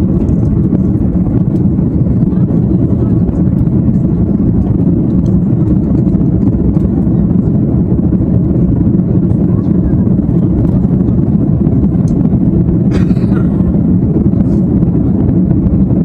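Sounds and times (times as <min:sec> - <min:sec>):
airplane cabin engine roar: 0:00.0 - 0:16.0.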